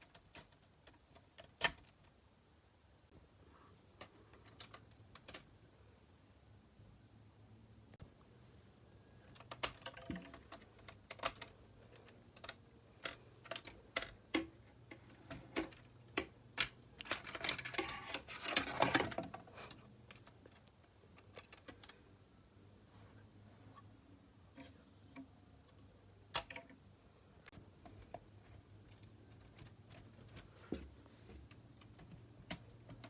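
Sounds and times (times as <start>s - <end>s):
plastic parts clicking and rattling: 0.0s - 2.2s, 3.9s - 5.6s, 9.0s - 22.3s, 24.5s - 33.0s.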